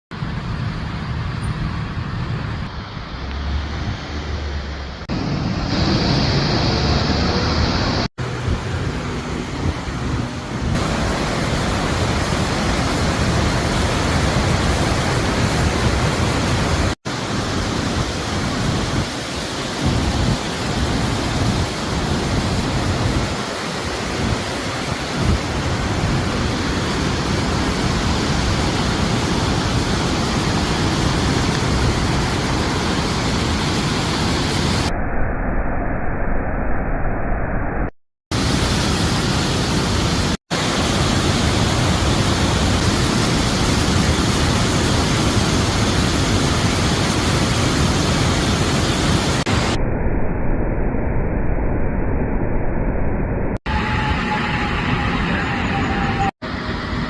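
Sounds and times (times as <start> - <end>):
waterfall roaring: 1.6 - 34.9, 38.3 - 49.8.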